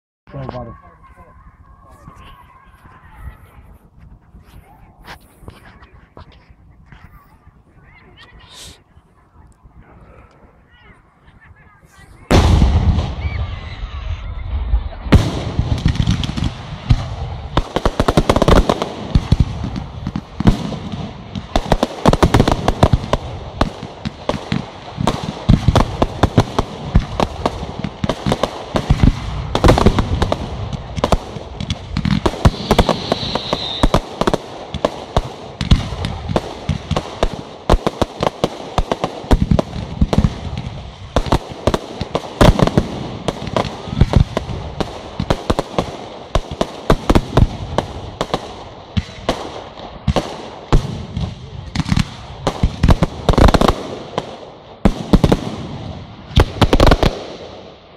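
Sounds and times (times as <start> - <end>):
fireworks bangs and crackling: 9.7 - 57.9
firework whistling: 12.9 - 15.4, 32.0 - 34.9.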